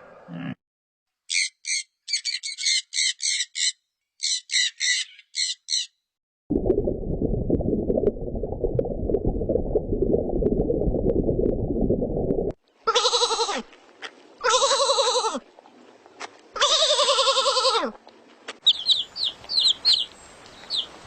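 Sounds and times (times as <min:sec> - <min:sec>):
bird squawking: 0:01.3 - 0:06.0, 0:18.6 - 0:20.1.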